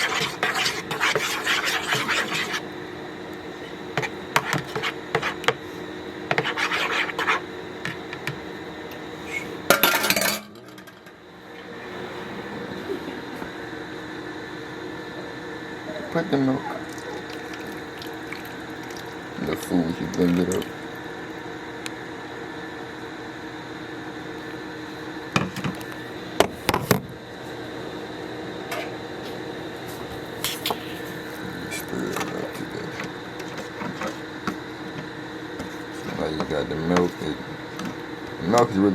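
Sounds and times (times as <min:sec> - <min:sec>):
utensil scraping a bowl: 0:00.0 - 0:02.7, 0:04.0 - 0:05.6, 0:06.3 - 0:08.0
appliance hum: 0:00.0 - 0:38.9.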